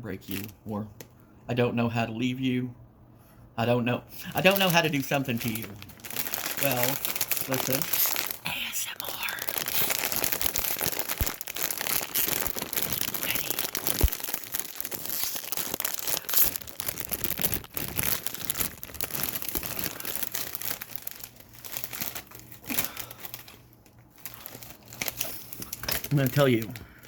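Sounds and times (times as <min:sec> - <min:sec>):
plastic chip bag crinkling: 0:00.2 - 0:00.6, 0:04.2 - 0:27.0.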